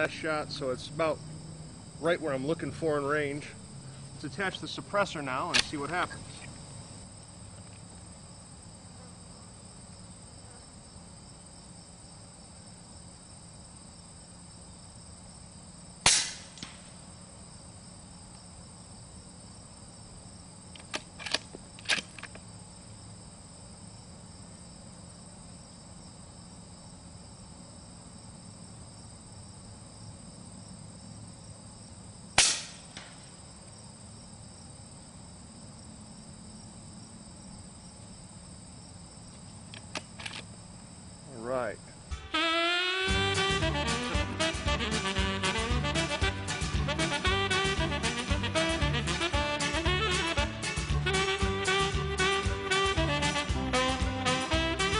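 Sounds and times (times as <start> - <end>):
insects chirring: 0.0 - 54.9
suppressed rifle shots: 5.5 - 5.9, 16.0 - 16.9, 32.4 - 33.2.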